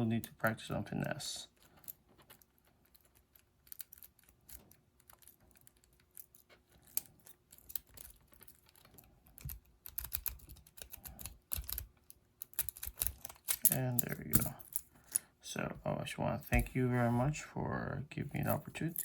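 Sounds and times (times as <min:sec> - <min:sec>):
lock pick metallic clicks: 0:01.6 - 0:15.2.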